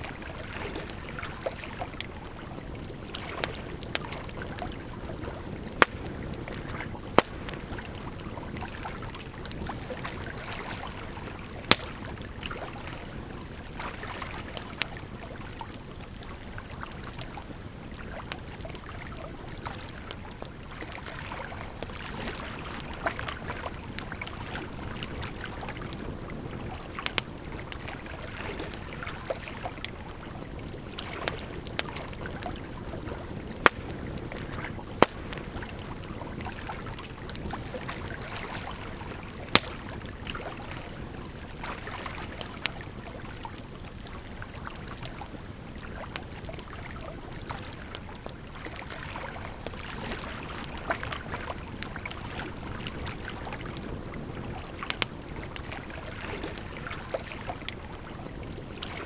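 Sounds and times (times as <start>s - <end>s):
flowing water: 0.0s - 59.0s
firewood crackling and popping: 0.1s - 59.0s.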